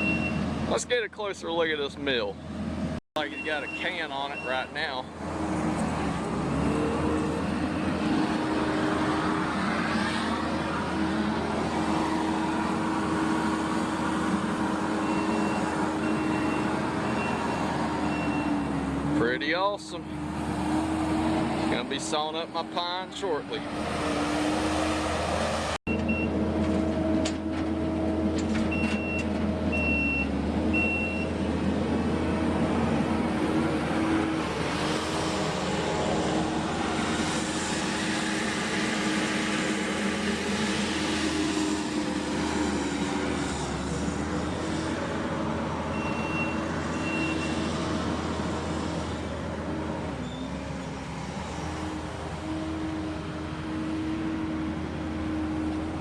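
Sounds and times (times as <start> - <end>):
reversing alarm beeping: 0.0 - 0.4, 3.2 - 4.8, 15.0 - 18.7, 28.7 - 31.3, 45.9 - 47.5
heavy machinery engine running: 2.4 - 56.0.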